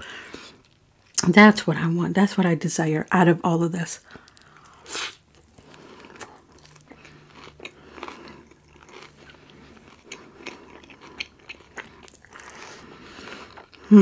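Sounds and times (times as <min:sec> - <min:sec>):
chewing and biting food: 0:04.2 - 0:13.9.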